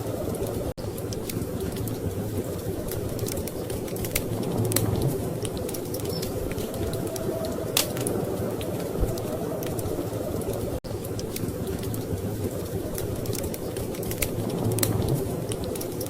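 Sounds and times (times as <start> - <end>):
low rumble: 0.0 - 15.8
wood fire crackling: 0.0 - 16.0
sharp pops of fire: 0.9 - 8.2, 11.0 - 16.0.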